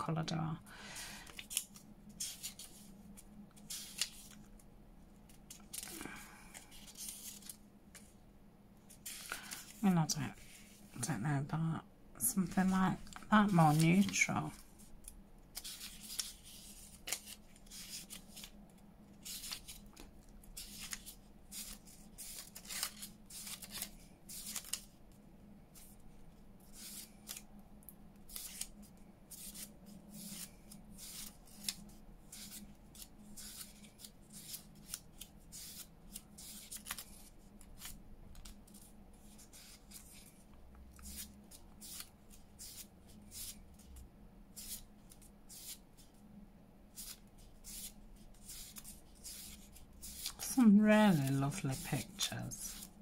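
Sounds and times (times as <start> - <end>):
paper rustling: 0.9 - 4.6, 5.2 - 8.2, 8.9 - 10.9, 12.4 - 14.9, 15.5 - 25.0, 28.2 - 44.0, 47.0 - 53.0.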